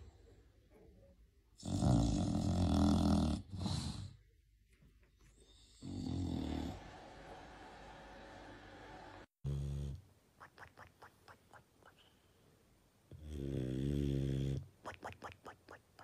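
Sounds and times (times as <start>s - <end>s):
snoring: 1.6s - 4.2s, 5.6s - 6.8s, 9.4s - 10.0s, 13.1s - 14.7s.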